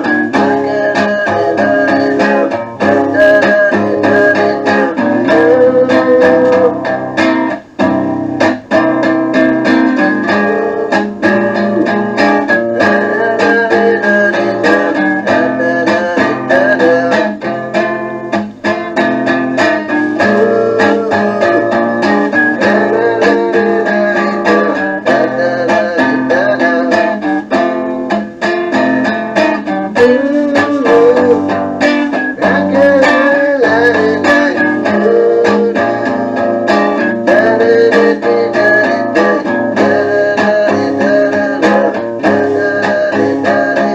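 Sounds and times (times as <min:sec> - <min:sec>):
guitar-led music from cassette: 0:00.0 - 0:43.9.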